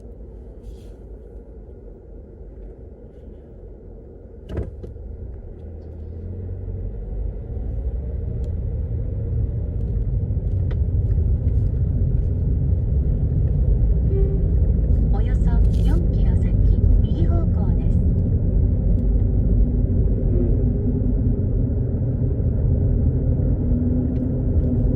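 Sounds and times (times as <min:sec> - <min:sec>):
car engine rumbling: 0:00.0 - 0:24.9.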